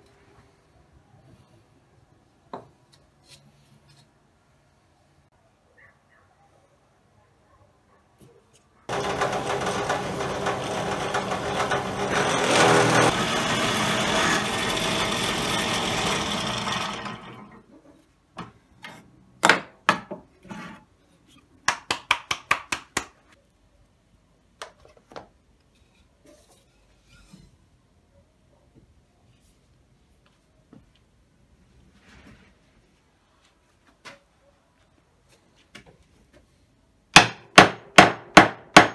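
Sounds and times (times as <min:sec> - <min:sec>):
electric power tool on wood: 0:08.9 - 0:17.6.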